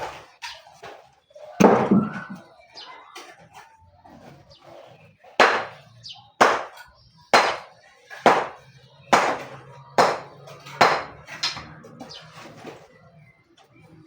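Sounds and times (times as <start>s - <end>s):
hammer blows ringing: 5.4s - 5.8s, 6.4s - 11.6s.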